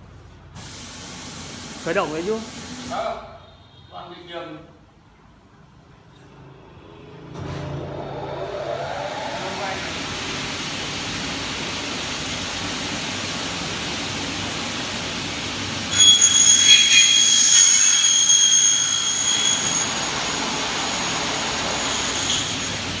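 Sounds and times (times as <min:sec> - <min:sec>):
saw screeching through metal: 0:15.9 - 0:23.0.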